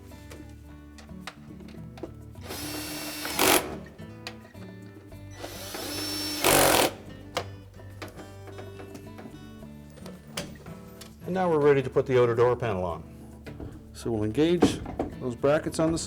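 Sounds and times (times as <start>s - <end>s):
cordless screwdriver motor: 2.4s - 3.9s, 5.4s - 7.1s.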